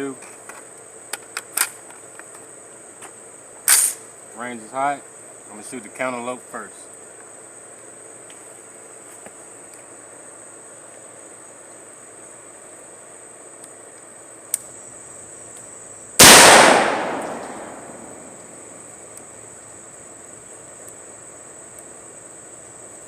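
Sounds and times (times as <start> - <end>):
rifle shot echoing: 16.2 - 18.7.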